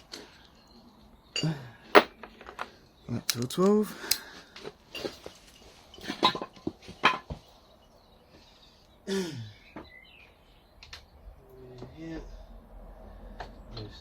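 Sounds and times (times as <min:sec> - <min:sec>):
metal tools clinking: 0:04.9 - 0:07.2.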